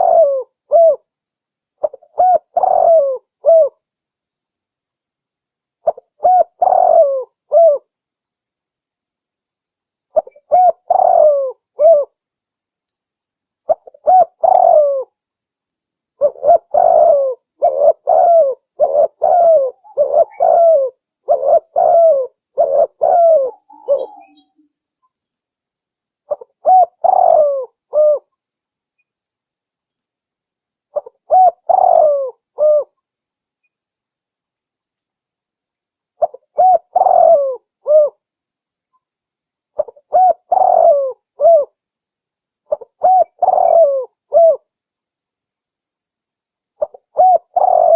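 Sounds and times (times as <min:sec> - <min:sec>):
dove cooing: 0:00.0 - 0:01.0, 0:01.8 - 0:03.8, 0:05.8 - 0:07.9, 0:10.2 - 0:12.2, 0:13.7 - 0:15.1, 0:16.2 - 0:24.6, 0:26.3 - 0:28.3, 0:30.9 - 0:32.9, 0:36.2 - 0:38.2, 0:39.8 - 0:41.8, 0:42.7 - 0:44.6, 0:46.8 - 0:47.9.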